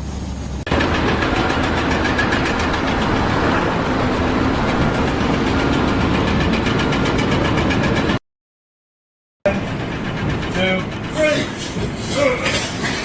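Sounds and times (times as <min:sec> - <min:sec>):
loud engine noise: 0:00.0 - 0:08.2, 0:09.5 - 0:13.0.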